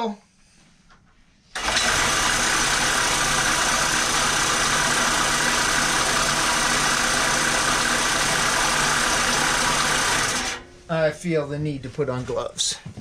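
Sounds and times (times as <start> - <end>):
bandsaw running: 1.6 - 10.7.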